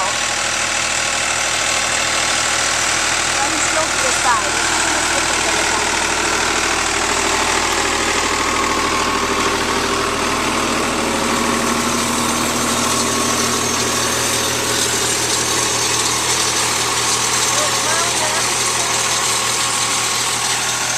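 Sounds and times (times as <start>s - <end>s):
farm machine engine running: 0.0s - 20.9s.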